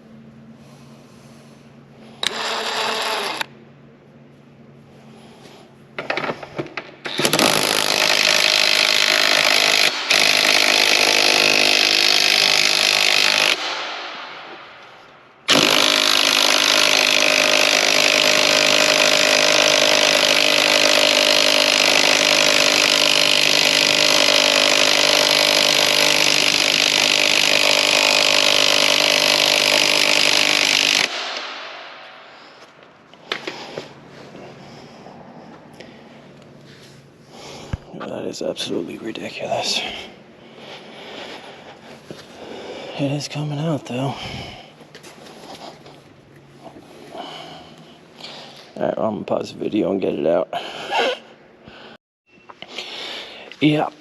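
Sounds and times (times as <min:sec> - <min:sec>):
impact wrench hammering: 0:06.0 - 0:33.9.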